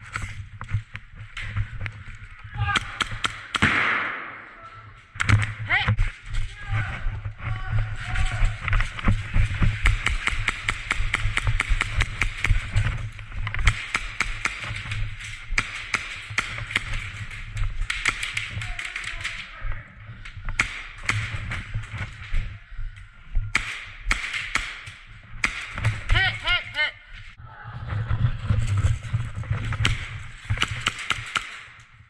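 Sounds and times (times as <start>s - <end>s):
airsoft guns firing rapidly: 2.6s - 4.3s, 8.2s - 19.5s, 20.5s - 22.0s, 23.5s - 26.6s, 29.8s - 31.8s.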